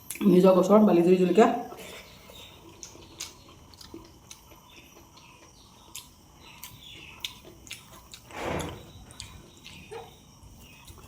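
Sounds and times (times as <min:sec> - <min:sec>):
faint bird chirps: 0:01.8 - 0:11.0
chewing mouth clicks: 0:02.6 - 0:08.3.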